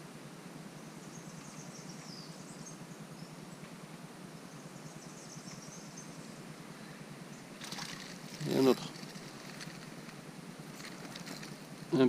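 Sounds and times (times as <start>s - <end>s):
low background hiss: 0.0s - 12.0s
faint bird chirps: 0.7s - 3.7s, 4.3s - 9.8s.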